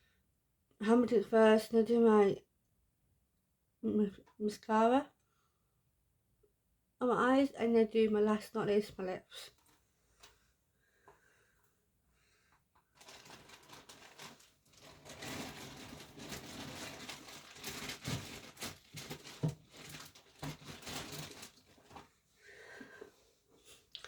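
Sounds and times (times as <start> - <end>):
rustling and crinkling: 12.8 - 22.3.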